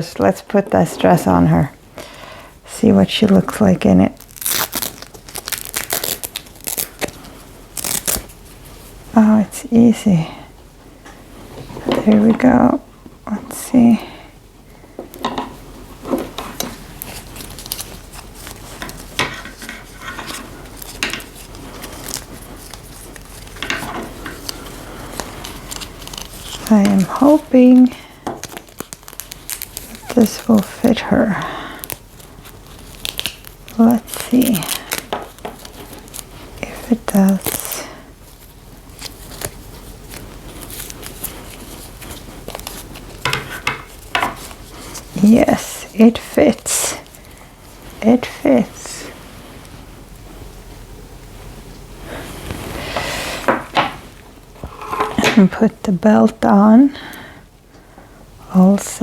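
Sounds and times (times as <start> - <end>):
soft rustling: 0.0 - 57.1.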